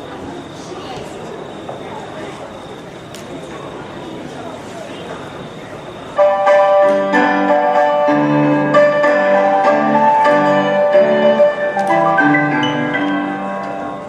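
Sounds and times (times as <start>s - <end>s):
piano chords over bass line: 6.2s - 14.0s.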